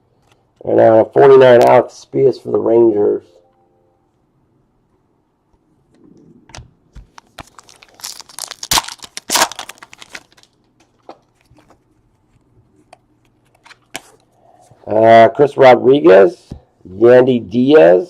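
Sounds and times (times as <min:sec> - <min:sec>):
wrapper crinkling and tearing: 0:07.1 - 0:11.8.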